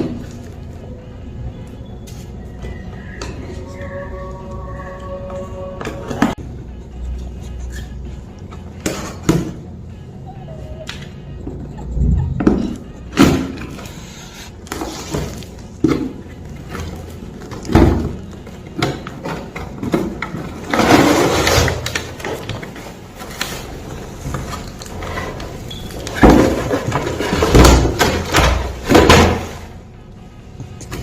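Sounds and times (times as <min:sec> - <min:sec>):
rustling of handled things: 0:11.5 - 0:29.8.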